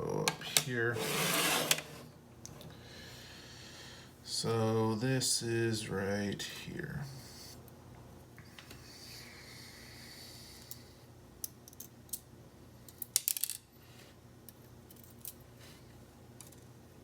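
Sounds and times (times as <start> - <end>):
small metal parts clicking: 12.9 - 13.6.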